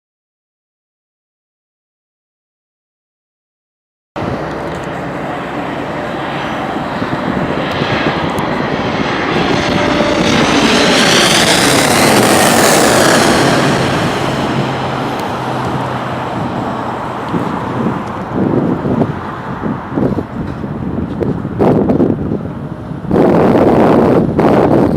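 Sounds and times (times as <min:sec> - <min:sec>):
jet airliner passing low: 0:04.2 - 0:24.9
jet engine whine: 0:04.2 - 0:24.9.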